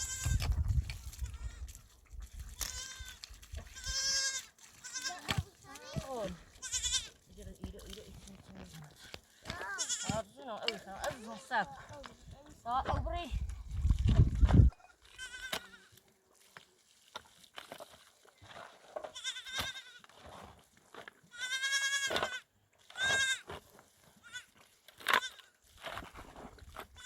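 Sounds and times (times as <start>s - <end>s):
goats bleating: 0.0s - 0.4s, 2.6s - 7.2s, 9.4s - 10.3s, 15.0s - 16.0s, 19.1s - 20.0s, 21.3s - 22.4s, 23.0s - 23.5s, 24.2s - 25.4s.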